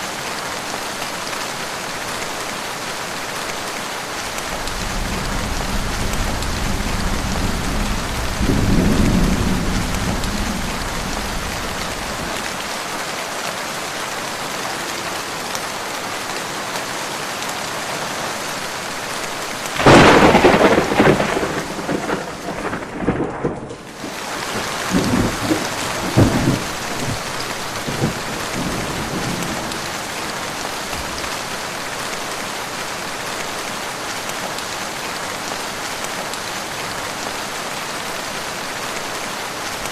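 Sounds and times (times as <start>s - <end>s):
heavy steady rain: 0.0s - 39.9s
thunder rumbling: 4.5s - 12.5s, 19.8s - 23.9s, 24.6s - 29.8s
sharp thunderclap: 4.8s - 12.2s, 19.8s - 23.8s.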